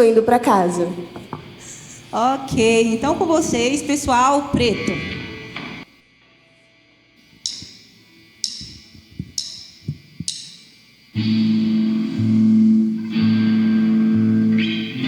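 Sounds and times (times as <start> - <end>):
cymbal taps: 1.2 - 4.8, 7.4 - 10.8.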